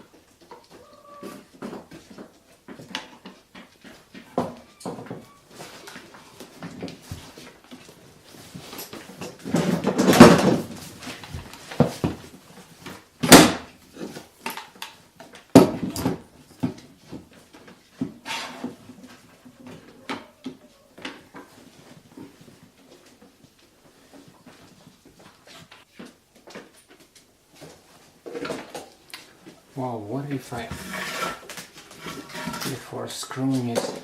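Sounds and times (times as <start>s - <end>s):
scraping rustle: 16.9s - 25.9s, 27.6s - 34.0s.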